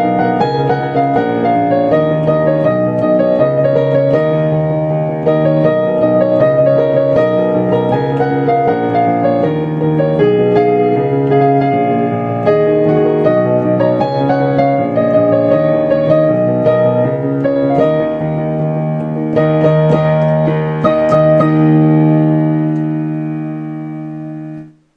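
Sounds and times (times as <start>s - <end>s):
solo piano chords: 0.0s - 24.9s.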